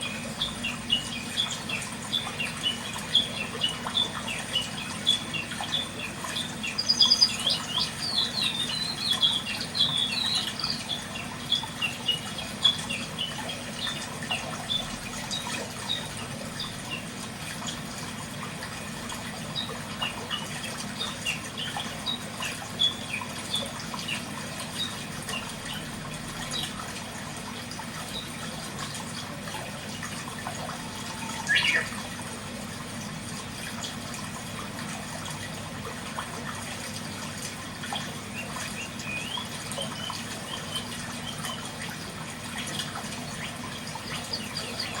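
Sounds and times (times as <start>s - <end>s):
small birds chirping: 0.0s - 17.1s, 30.8s - 32.0s, 38.0s - 41.7s, 43.3s - 45.0s.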